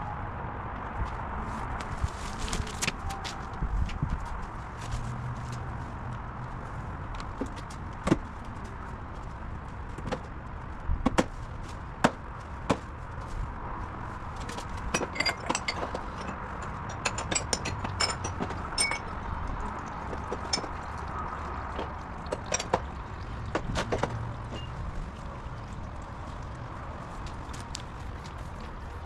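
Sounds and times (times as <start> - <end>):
metal tools knocking: 14.9 - 19.2
light metal clicks and clinks: 15.0 - 19.2.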